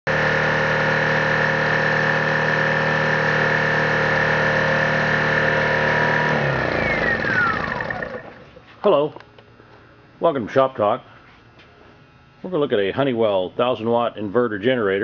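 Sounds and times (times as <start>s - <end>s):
engine spinning down whine: 0.1s - 8.7s
generator engine running: 0.1s - 10.9s.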